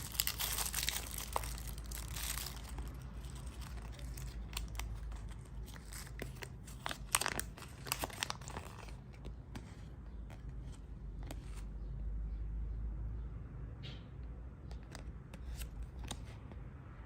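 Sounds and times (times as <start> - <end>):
wrapper crinkling and tearing: 0.0 - 9.2.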